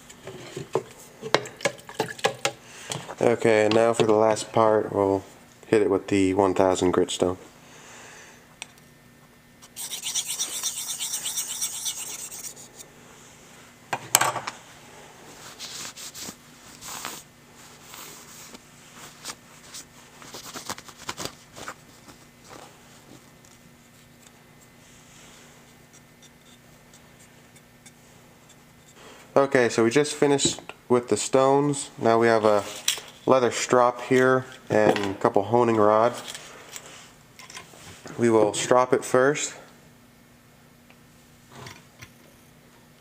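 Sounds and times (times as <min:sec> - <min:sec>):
knife scraping on sharpening stone: 0:09.6 - 0:12.8.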